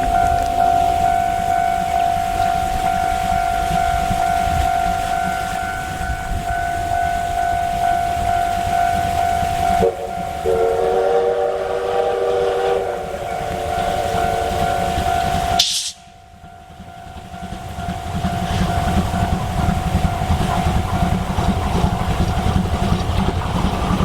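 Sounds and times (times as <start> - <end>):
level crossing bell ringing: 0.0 - 11.0, 12.2 - 22.8
train whistle: 0.0 - 16.5
train rumbling past: 0.0 - 24.0.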